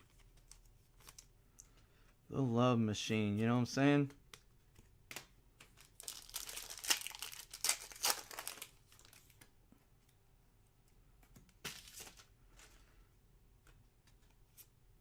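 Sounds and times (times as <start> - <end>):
foil wrapper crinkling and tearing: 5.8 - 9.3.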